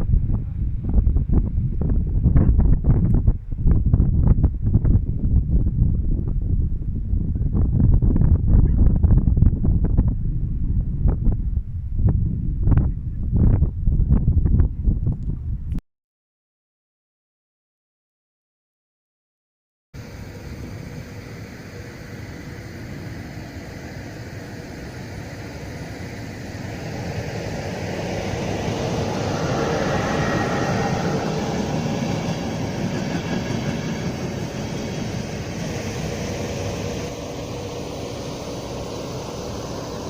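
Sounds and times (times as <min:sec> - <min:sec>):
train passing: 0:20.0 - 0:40.0.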